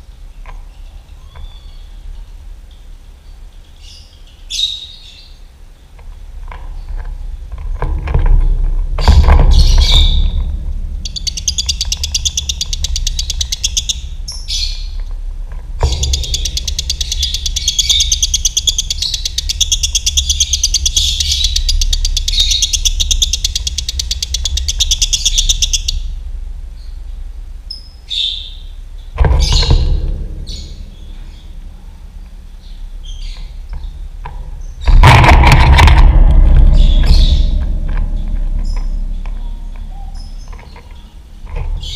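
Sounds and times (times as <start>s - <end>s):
low background rumble: 0.0s - 41.9s
lovebird rattling trills: 9.0s - 15.1s, 15.8s - 26.2s.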